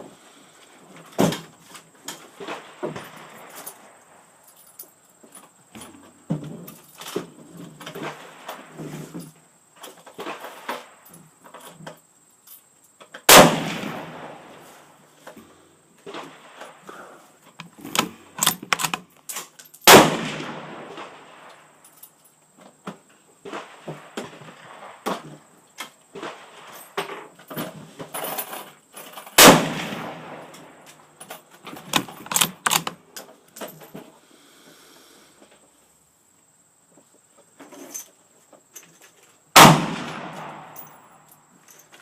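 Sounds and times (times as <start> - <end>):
loud gunshots with echo: 13.3 - 14.4
sharp cracks and clicks: 17.6 - 21.6, 31.8 - 33.0.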